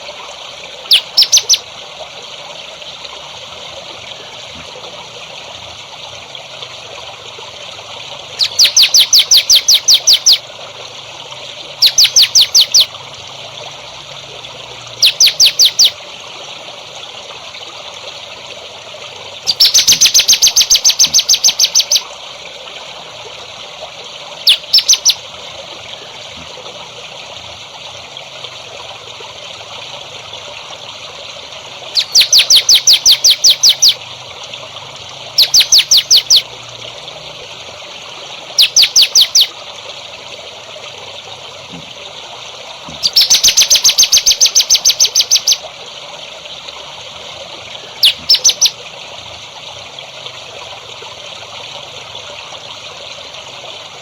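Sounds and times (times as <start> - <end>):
water trickling: 0.0 - 54.0
songbird sharp high notes: 0.9 - 1.6, 8.4 - 10.4, 11.8 - 12.9, 15.0 - 15.9.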